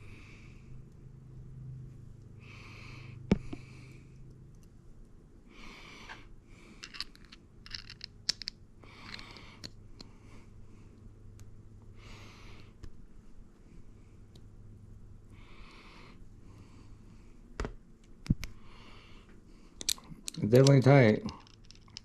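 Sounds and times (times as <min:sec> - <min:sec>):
breathing: 0:00.0 - 0:00.8, 0:02.4 - 0:04.2, 0:05.5 - 0:07.0, 0:08.8 - 0:11.0, 0:12.0 - 0:12.8, 0:15.3 - 0:17.5, 0:18.5 - 0:20.2
ratchet parts clicking: 0:06.8 - 0:09.3, 0:19.8 - 0:22.0.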